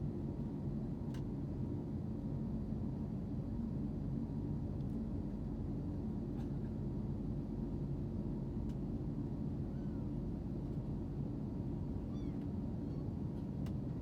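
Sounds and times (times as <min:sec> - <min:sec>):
faint high cries: 0:09.7 - 0:10.0, 0:12.0 - 0:13.0.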